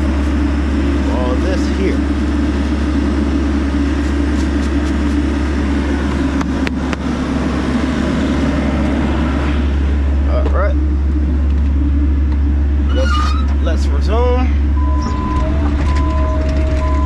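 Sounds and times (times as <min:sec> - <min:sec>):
excavator diesel engine idling: 0:00.0 - 0:17.0.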